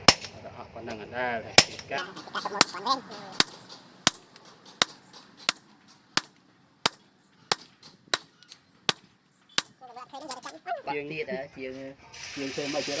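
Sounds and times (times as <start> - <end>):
hammer striking metal: 1.6 - 10.6.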